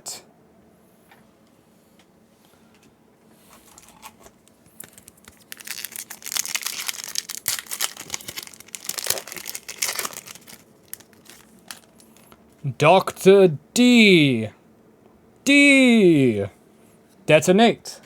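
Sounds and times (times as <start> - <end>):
foil wrapper crinkling and tearing: 3.6 - 12.4.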